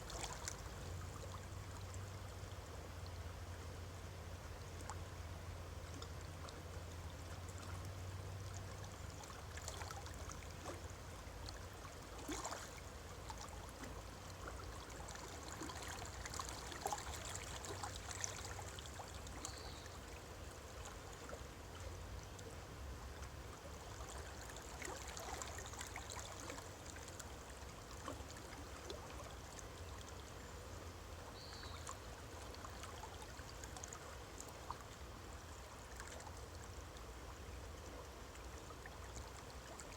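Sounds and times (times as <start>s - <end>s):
running water with splashes: 0.0s - 2.4s, 5.2s - 30.4s.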